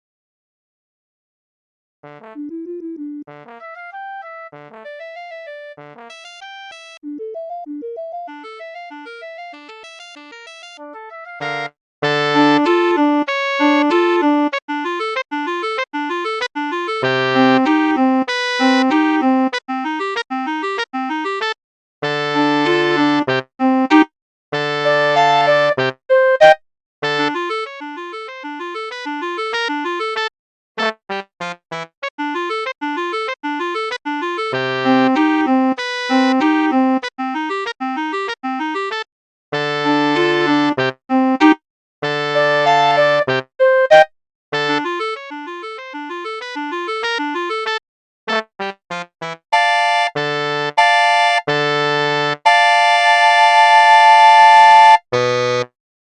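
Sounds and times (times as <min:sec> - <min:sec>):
playful wind ensemble music: 0:02.1 - 0:30.3, 0:31.7 - 0:39.0, 0:39.6 - 0:48.5.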